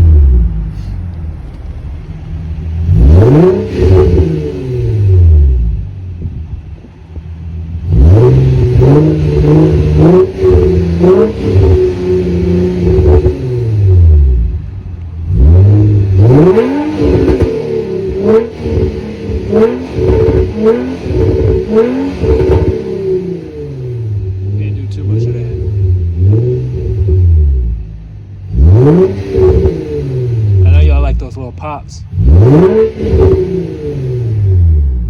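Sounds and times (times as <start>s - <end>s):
exhaust crackles and pops: 0.0s - 4.4s, 7.8s - 23.0s
car engine revving: 0.0s - 35.0s.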